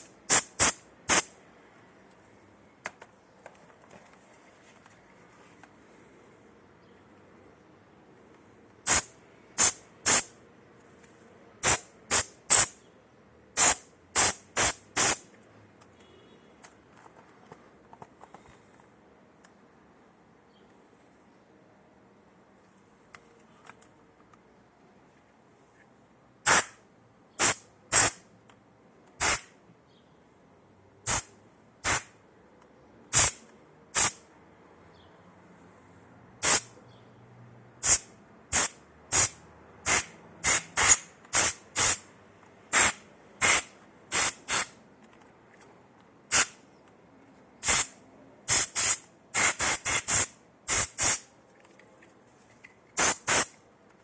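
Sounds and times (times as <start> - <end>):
compressed air spray bursts: 0.0 - 1.4, 8.8 - 10.4, 11.6 - 12.8, 13.6 - 15.3, 26.4 - 26.8, 27.4 - 28.3, 29.2 - 29.6, 31.0 - 32.2, 33.1 - 34.2, 36.4 - 36.8, 37.8 - 42.1, 42.7 - 44.8, 46.3 - 46.6, 47.6 - 51.3, 53.0 - 53.6.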